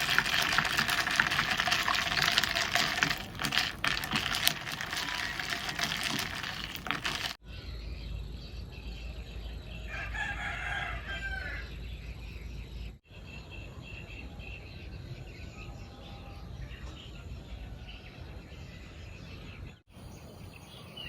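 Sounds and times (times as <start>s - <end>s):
rooster crowing: 9.9s - 11.7s.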